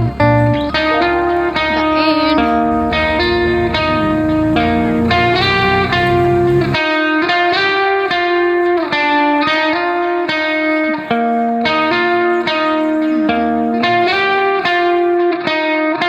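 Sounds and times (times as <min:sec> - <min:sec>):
bass: 0:00.0 - 0:06.8, 0:07.6 - 0:15.2
effects-laden guitar held notes: 0:00.0 - 0:16.0.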